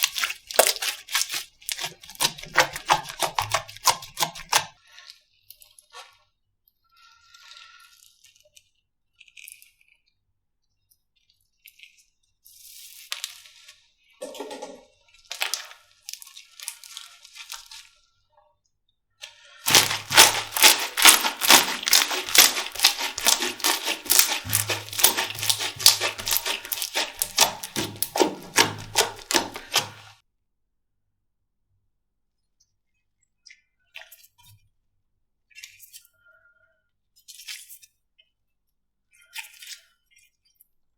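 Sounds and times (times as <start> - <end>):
slime popping and crackling: 0.0 - 4.7, 19.7 - 30.1.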